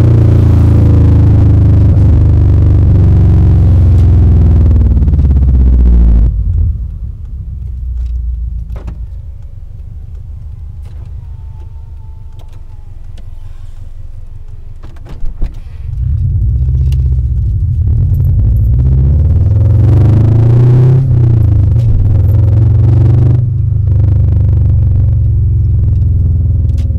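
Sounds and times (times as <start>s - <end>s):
car exhaust idling and revving: 0.0s - 26.9s.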